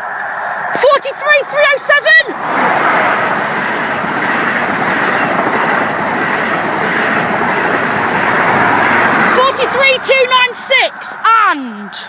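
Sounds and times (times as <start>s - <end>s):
train wheels rushing on rail: 0.7s - 11.3s.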